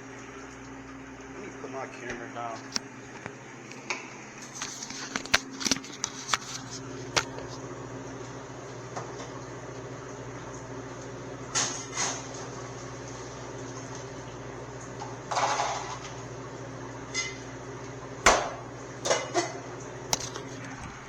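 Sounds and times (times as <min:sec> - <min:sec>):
kitchen machinery humming: 0:00.0 - 0:21.0.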